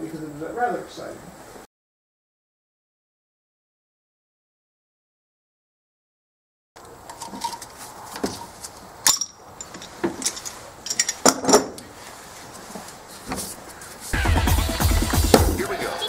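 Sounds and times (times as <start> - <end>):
metal hand tools clinking: 7.1 - 11.6.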